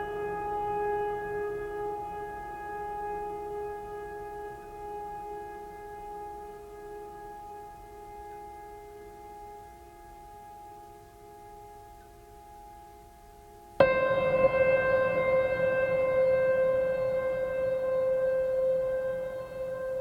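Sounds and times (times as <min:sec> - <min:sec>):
held music chord: 0:13.8 - 0:20.0.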